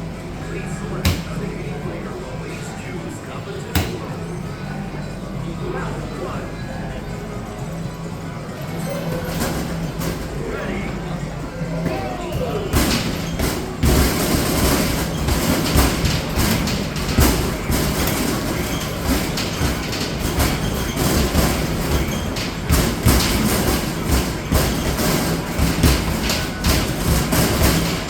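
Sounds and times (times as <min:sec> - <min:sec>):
din of arcade machines: 0:00.0 - 0:28.0
basketballs thudding on backboard: 0:00.9 - 0:01.6, 0:03.7 - 0:04.2, 0:11.8 - 0:28.0.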